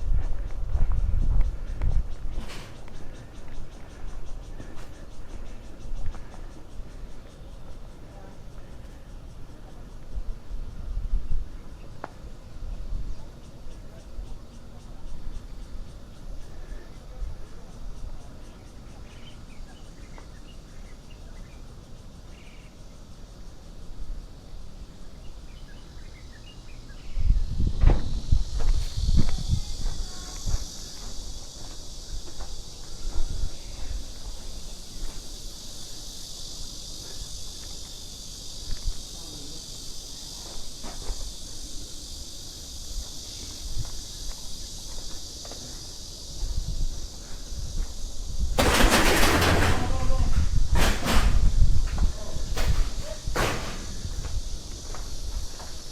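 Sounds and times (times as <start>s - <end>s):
footsteps: 0.0s - 6.6s, 27.8s - 35.3s, 40.3s - 41.4s, 43.0s - 46.6s, 48.6s - 55.9s
faint bird or insect chirps: 0.0s - 55.9s
thumps and rustling nearby: 2.3s - 2.9s, 27.7s - 33.4s, 40.4s - 41.3s, 48.5s - 55.8s.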